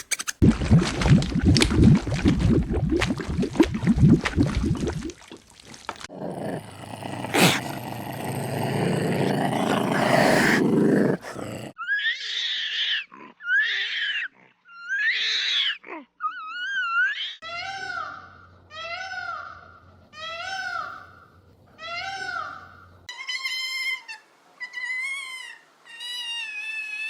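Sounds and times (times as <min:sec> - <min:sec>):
animal growling: 0:06.0 - 0:11.8.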